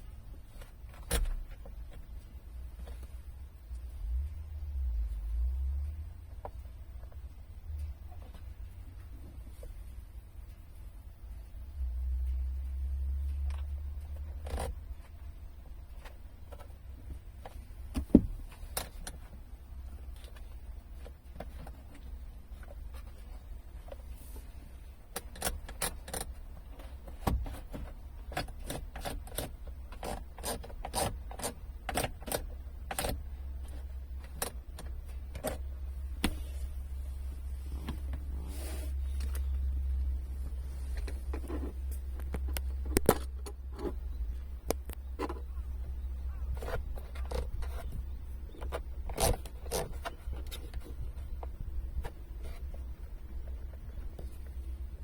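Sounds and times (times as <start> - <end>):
low hum: 32.6 - 55.0
parts clicking and tapping: 39.2 - 54.9.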